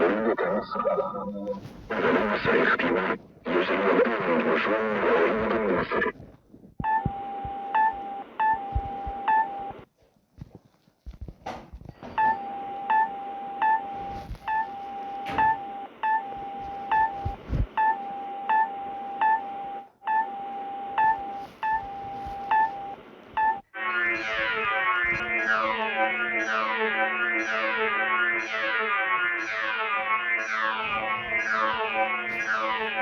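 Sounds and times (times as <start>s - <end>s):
steady electronic tone: 21.0s - 33.0s.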